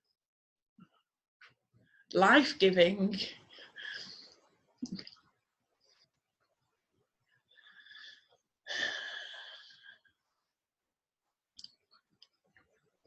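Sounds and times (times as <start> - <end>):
person breathing close: 7.5 - 10.2.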